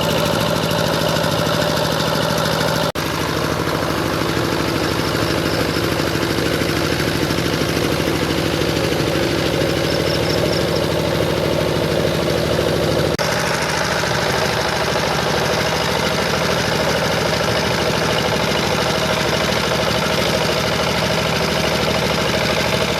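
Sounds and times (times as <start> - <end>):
diesel engine chugging: 0.0 - 22.9.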